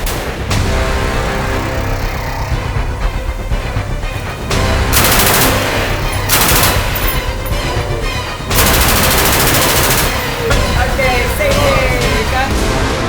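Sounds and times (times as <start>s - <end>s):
rapid automatic gunfire: 4.9s - 7.2s, 8.5s - 10.5s.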